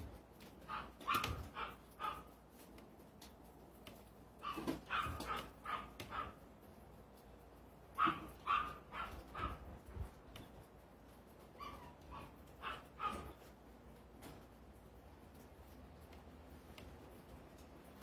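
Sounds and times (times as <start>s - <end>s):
dog barking: 0.7s - 2.3s, 4.4s - 6.4s, 8.0s - 9.7s, 11.6s - 13.4s.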